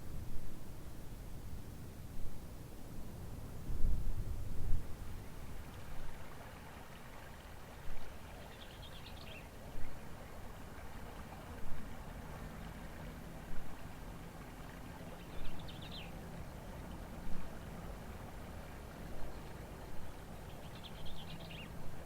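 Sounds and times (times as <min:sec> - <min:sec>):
water flowing and lapping: 0:05.1 - 0:22.0.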